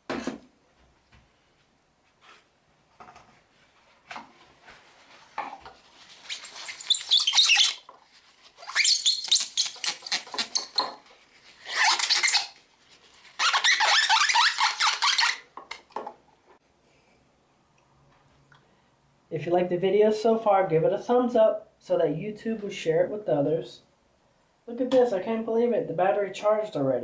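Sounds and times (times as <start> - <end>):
cloth squeaking on plastic: 5.8 - 12.6, 13.2 - 15.6.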